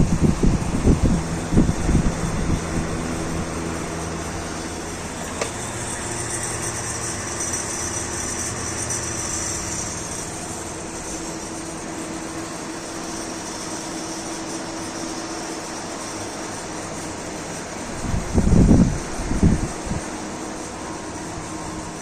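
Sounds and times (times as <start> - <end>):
fan click: 0.0 - 10.4
electric fan running: 0.0 - 22.0.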